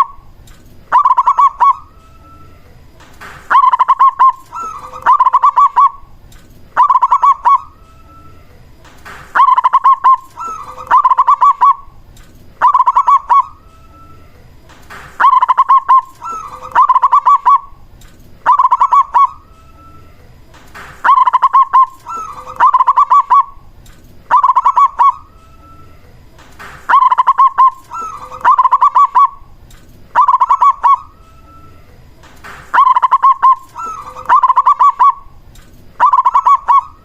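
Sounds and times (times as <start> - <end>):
dove cooing: 0.9 - 1.9, 3.5 - 6.1, 6.8 - 7.8, 9.4 - 12.0, 12.6 - 13.7, 15.2 - 17.8, 18.4 - 19.5, 21.0 - 23.6, 24.3 - 25.8, 26.9 - 29.5, 30.1 - 31.5, 32.7 - 35.3, 36.0 - 37.0.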